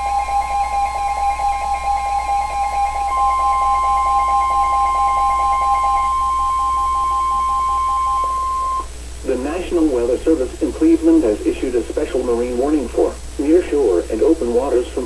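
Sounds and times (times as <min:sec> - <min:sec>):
lower pulsing beeps: 0:00.0 - 0:08.9
piercing warning alarm tone: 0:00.0 - 0:10.0.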